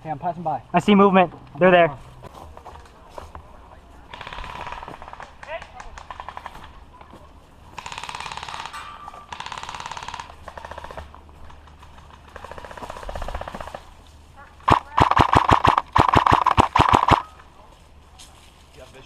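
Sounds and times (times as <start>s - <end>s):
airsoft guns firing bursts: 4.1s - 6.5s, 7.8s - 11.1s, 11.8s - 13.8s, 14.6s - 17.3s.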